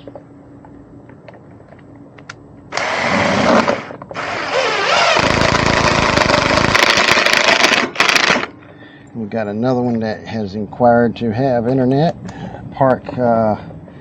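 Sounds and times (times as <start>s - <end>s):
electric drill running: 2.7s - 8.5s.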